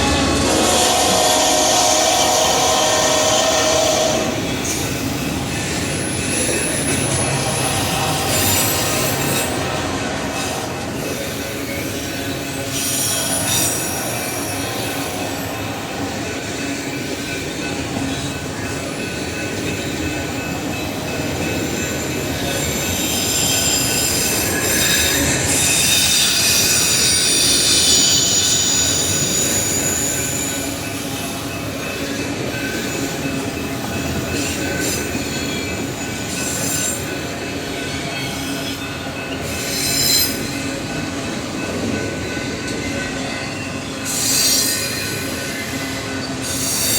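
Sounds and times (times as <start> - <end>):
train wheels on rails: 0.0 - 46.9
high-pitched wheel squeal: 23.0 - 30.7, 39.4 - 40.6.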